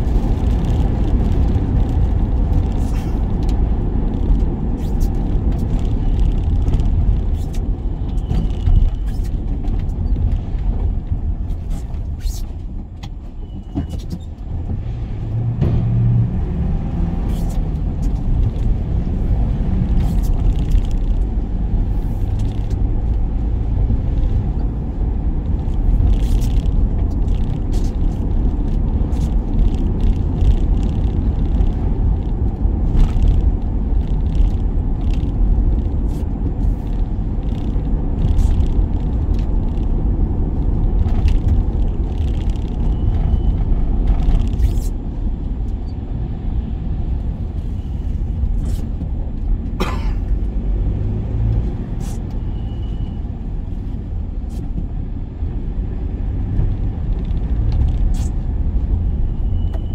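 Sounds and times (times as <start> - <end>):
van engine and road rumble: 0.0 - 59.9.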